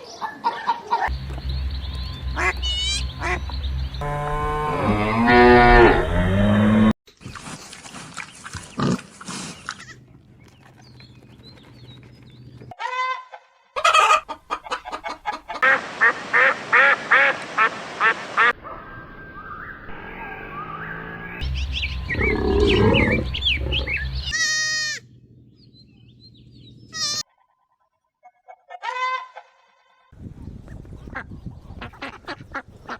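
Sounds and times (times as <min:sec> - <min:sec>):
poultry calling: 0:02.3 - 0:06.1, 0:13.8 - 0:15.8, 0:22.0 - 0:25.1, 0:26.9 - 0:27.3.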